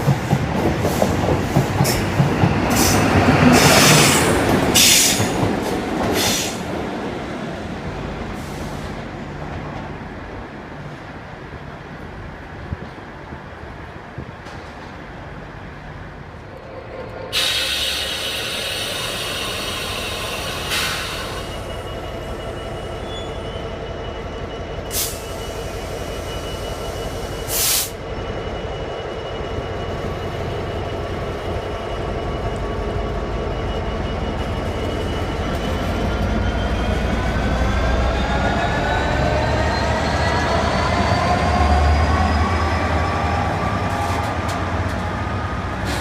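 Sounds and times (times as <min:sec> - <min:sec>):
train air brake hissing: 0:02.7 - 0:05.4, 0:06.1 - 0:06.7, 0:08.3 - 0:09.0, 0:17.3 - 0:21.9, 0:24.9 - 0:28.0
high squeal: 0:17.3 - 0:44.2.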